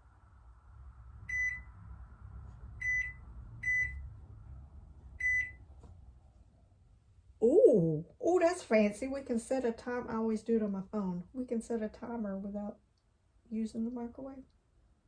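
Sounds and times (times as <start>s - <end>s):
faint low rumble: 0.0s - 15.0s
microwave keypad beeps: 1.3s - 1.6s, 2.8s - 3.9s, 5.2s - 5.6s.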